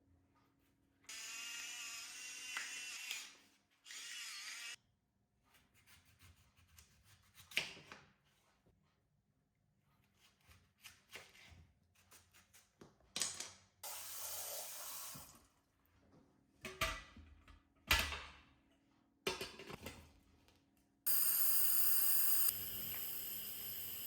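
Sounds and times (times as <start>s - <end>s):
food sizzling in a pan: 21.1s - 24.0s.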